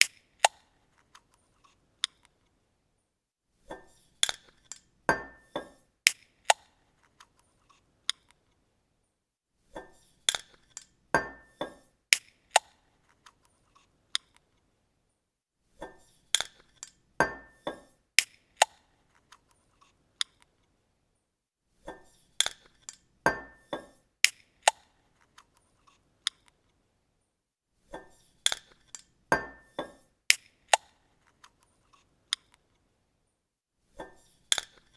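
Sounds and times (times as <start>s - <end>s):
bottle cap opening clicks: 30.3s - 31.0s.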